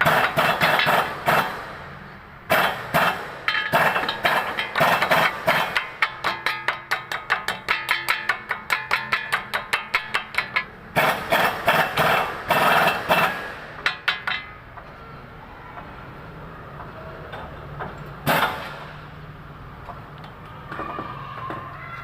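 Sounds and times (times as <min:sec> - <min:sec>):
hammer striking metal: 0:02.5 - 0:14.6.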